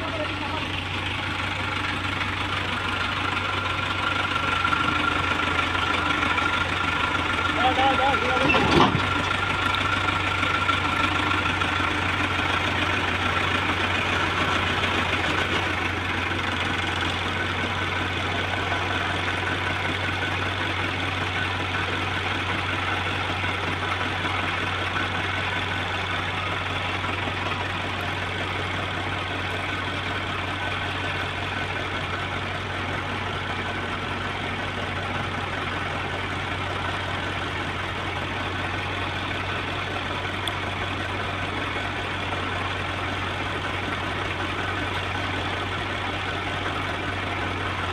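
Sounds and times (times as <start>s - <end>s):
excavator diesel engine running: 0.0s - 47.9s.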